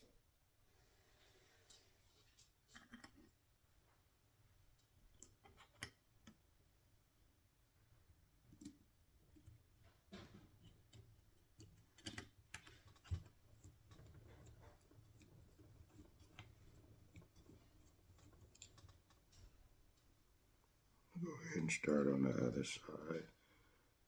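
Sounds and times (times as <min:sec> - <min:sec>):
clicks and taps of small parts: 0:05.2 - 0:06.4, 0:10.2 - 0:15.3.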